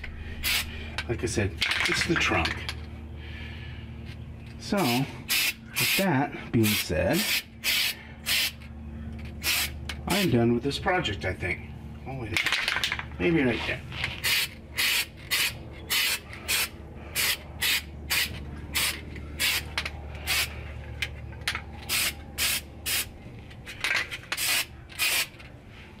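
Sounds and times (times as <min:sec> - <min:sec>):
paint spray hissing: 0:04.8 - 0:06.0, 0:06.6 - 0:08.6, 0:14.2 - 0:19.7, 0:21.9 - 0:23.1, 0:24.4 - 0:25.3.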